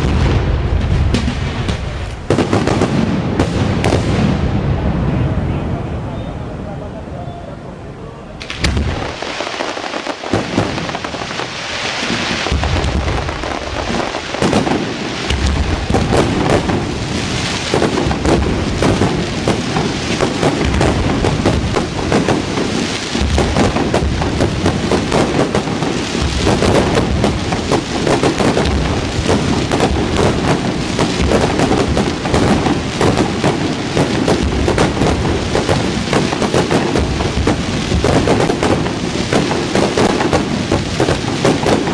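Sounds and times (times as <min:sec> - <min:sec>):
deep bangs of bursting shells: 0:00.0 - 0:04.6, 0:08.5 - 0:41.9
fireworks crackling: 0:00.0 - 0:06.1, 0:08.4 - 0:41.9.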